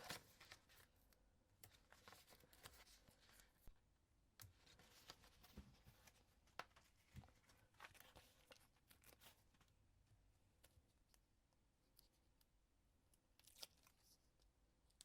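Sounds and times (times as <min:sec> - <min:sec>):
paper rustling and tapping: 0:00.0 - 0:00.8, 0:04.4 - 0:09.2.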